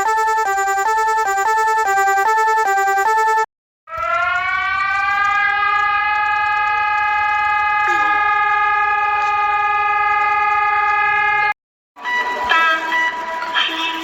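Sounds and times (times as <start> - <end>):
emergency alert alarm tone: 0.0 - 10.7.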